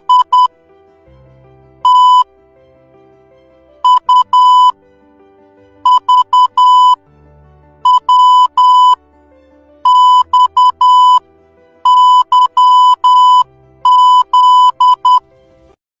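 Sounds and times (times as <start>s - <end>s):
morse code beeps: 0.0s - 0.5s, 1.8s - 2.3s, 3.8s - 4.8s, 5.8s - 7.0s, 7.8s - 9.0s, 9.8s - 11.2s, 11.8s - 15.2s
soft background music: 0.0s - 15.8s.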